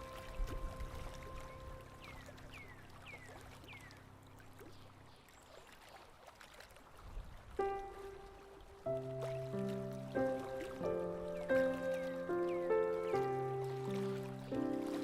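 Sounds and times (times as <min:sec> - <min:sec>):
soft music: 0:00.0 - 0:03.3, 0:07.6 - 0:15.0.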